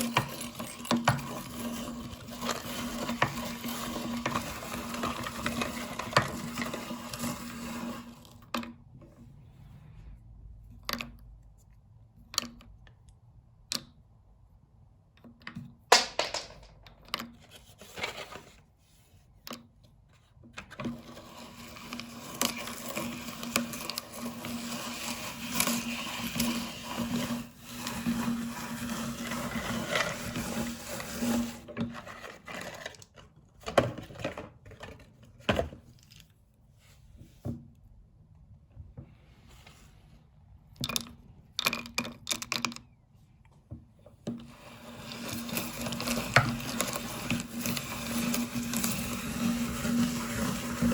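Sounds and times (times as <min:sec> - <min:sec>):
clicks and knocks: 0:15.3 - 0:17.4.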